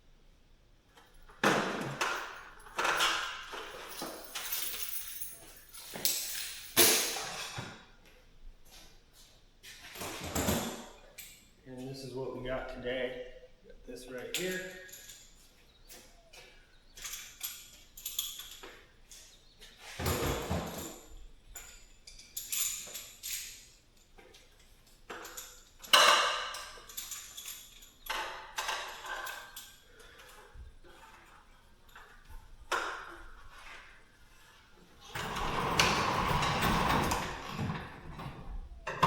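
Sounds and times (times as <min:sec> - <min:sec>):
metallic clinks and rattles: 0:02.0 - 0:07.7, 0:14.1 - 0:39.0.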